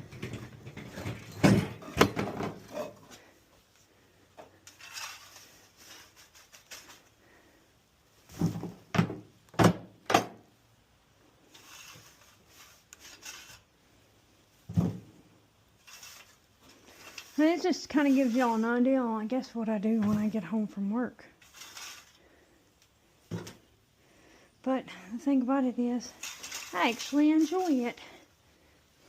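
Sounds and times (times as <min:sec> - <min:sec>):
shovel scraping stall floor: 0:04.7 - 0:07.1, 0:11.5 - 0:13.7, 0:15.8 - 0:18.8, 0:21.4 - 0:22.2, 0:26.1 - 0:28.1.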